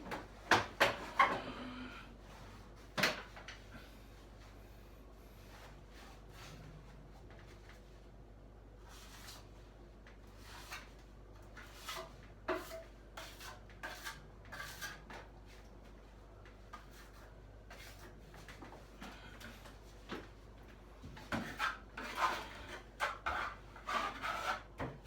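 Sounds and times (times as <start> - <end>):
faint steady hum: 0.0 - 13.8.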